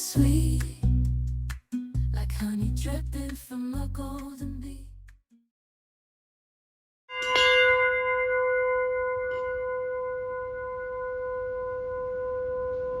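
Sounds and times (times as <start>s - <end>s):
bell-like tone ringing: 7.1s - 13.0s.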